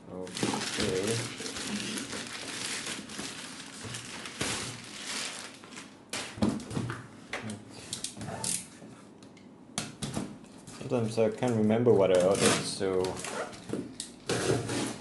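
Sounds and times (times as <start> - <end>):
packaging crinkling and rustling: 0.1 - 6.7.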